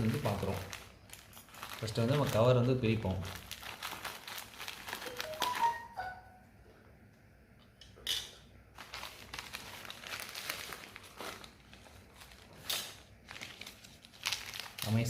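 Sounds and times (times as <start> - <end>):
package cover crinkling and rustling: 0.0 - 5.8, 8.7 - 15.0.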